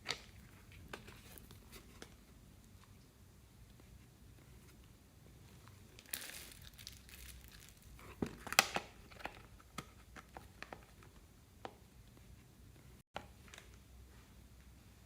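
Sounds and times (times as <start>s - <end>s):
slime crackling and popping: 6.0s - 8.8s.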